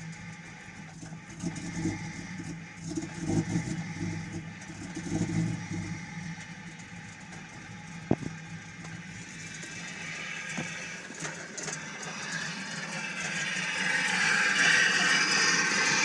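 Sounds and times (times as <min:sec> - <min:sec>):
car engine idling roughly: 0:00.0 - 0:16.0
engine backfire pops: 0:08.0 - 0:09.0.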